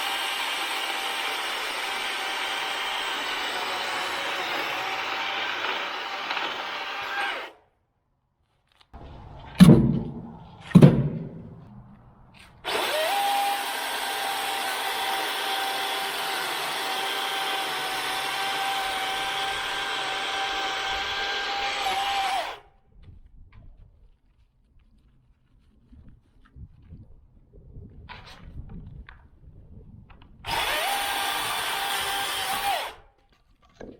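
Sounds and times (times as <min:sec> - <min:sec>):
battery chainsaw whining: 0:00.0 - 0:07.6, 0:12.6 - 0:22.6, 0:30.5 - 0:33.0
heavy thuds: 0:09.0 - 0:12.7.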